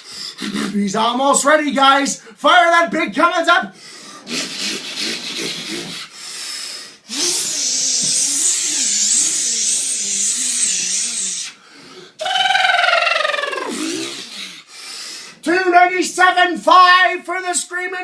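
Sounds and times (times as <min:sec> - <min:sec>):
man imitating engine with voice: 0:00.4 - 0:01.7, 0:07.1 - 0:11.5, 0:12.2 - 0:14.5.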